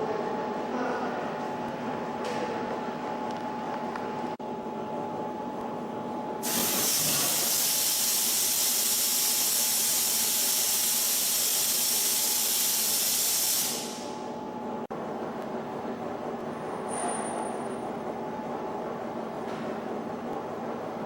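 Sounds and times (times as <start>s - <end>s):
loud steady hiss: 6.4s - 14.2s.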